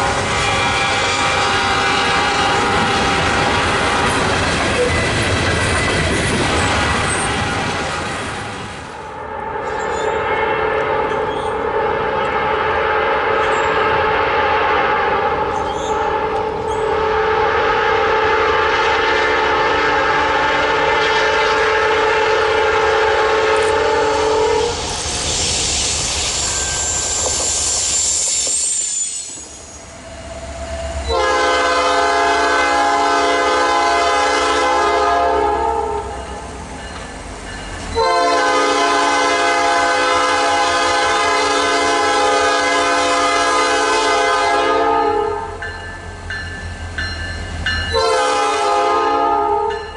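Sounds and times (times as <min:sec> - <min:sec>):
locomotive air horn chord: 0:00.0 - 0:04.0, 0:09.2 - 0:24.8, 0:30.6 - 0:36.2, 0:38.0 - 0:45.6, 0:47.9 - 0:49.8
high rail squeal: 0:00.0 - 0:17.5, 0:21.3 - 0:33.9, 0:35.4 - 0:43.7
passing train rail noise: 0:00.0 - 0:49.9.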